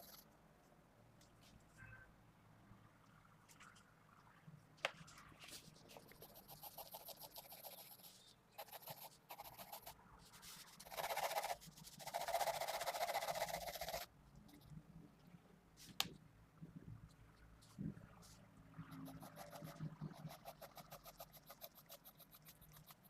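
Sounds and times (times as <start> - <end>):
pencil scratching across paper: 0.0 - 0.2, 5.5 - 14.7, 19.0 - 23.0.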